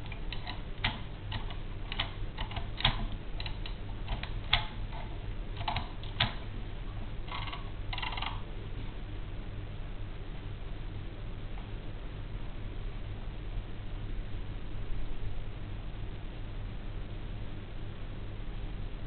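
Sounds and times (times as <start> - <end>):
typewriter typing clicks: 0.0 - 5.0, 5.6 - 6.4, 7.3 - 8.4
typewriter rattles: 7.3 - 8.4.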